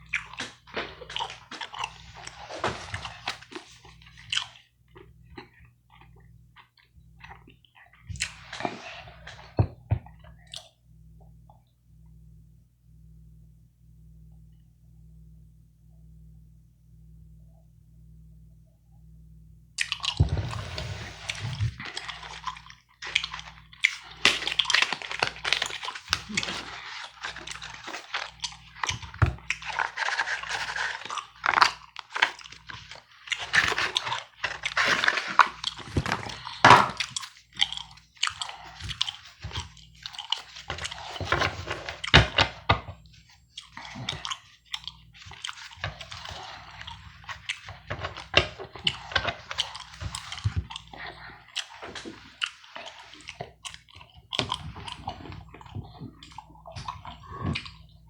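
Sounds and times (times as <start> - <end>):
gum chewing: 0.0 - 6.3, 19.8 - 42.7, 43.6 - 58.0.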